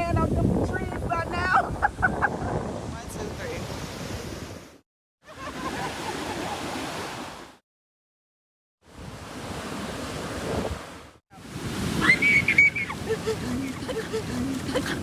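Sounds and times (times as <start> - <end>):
surf breaking on a beach: 9.0 - 15.0.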